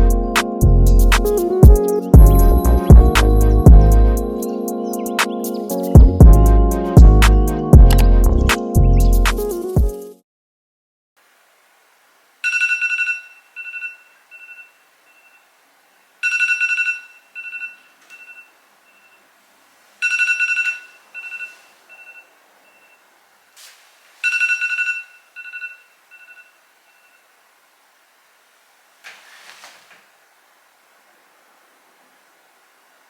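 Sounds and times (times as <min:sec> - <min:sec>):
electronic alarm tone with echoes: 0:12.4 - 0:15.4, 0:16.2 - 0:19.2, 0:20.0 - 0:23.0, 0:24.2 - 0:27.2.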